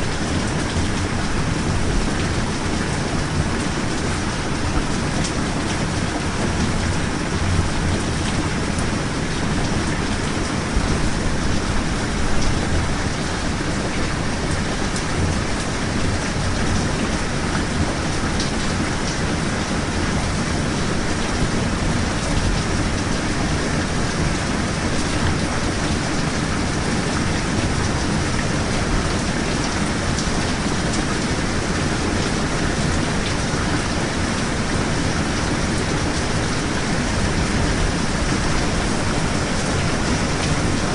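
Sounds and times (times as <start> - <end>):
steady rain: 0.0 - 40.9.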